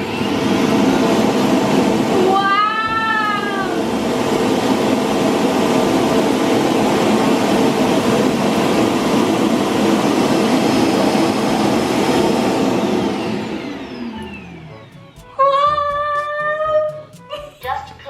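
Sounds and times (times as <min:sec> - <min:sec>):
suction motor running: 0:00.0 - 0:14.7.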